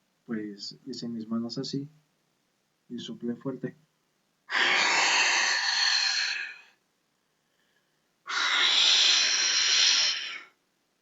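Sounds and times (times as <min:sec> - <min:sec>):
person blowing through cupped hands: 0:08.3 - 0:10.6.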